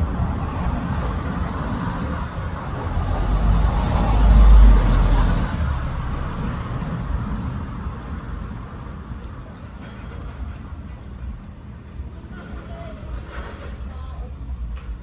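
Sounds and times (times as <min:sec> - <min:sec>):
vehicle passing by: 0:00.6 - 0:08.3.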